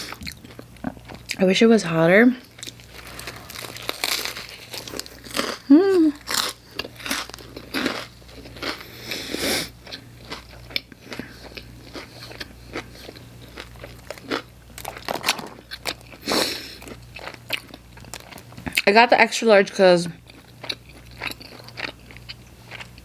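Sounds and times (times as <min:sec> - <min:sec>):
crunchy chewing: 0:02.4 - 0:18.9, 0:20.2 - 0:23.0
mouth sounds: 0:05.7 - 0:06.2.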